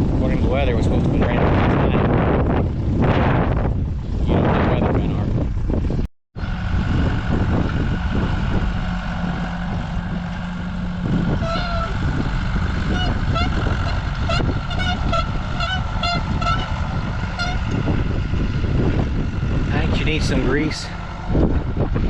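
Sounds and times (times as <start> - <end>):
low engine hum: 0.0 - 22.0
wind noise on microphone: 0.0 - 22.0
high-pitched machinery squeaks: 11.3 - 12.1, 12.9 - 17.9.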